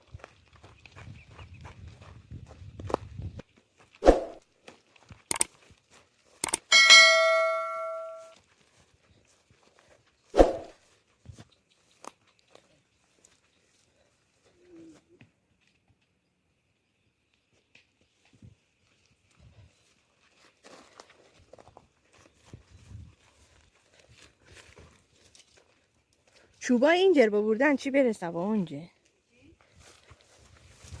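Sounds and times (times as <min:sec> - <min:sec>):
metal object clanging: 0:06.4 - 0:08.3.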